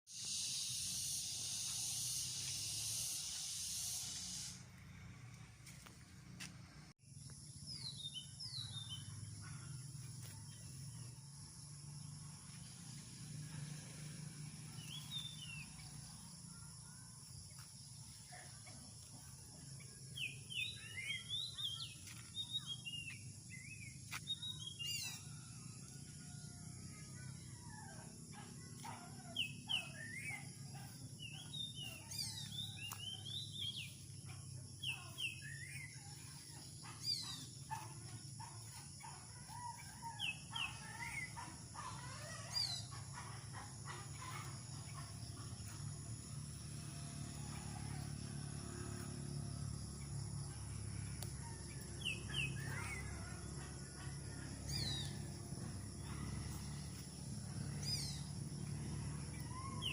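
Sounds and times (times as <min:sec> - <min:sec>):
crickets chirping: 0:00.1 - 0:59.9
birds chirping: 0:14.4 - 0:25.5, 0:27.9 - 0:46.2, 0:51.0 - 0:59.9.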